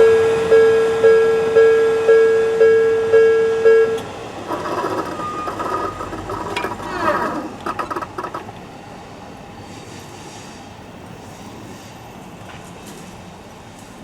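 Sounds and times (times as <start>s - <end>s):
level-crossing warning bell: 0.0s - 8.8s
street noise: 0.0s - 14.0s
train rumble: 0.0s - 14.0s.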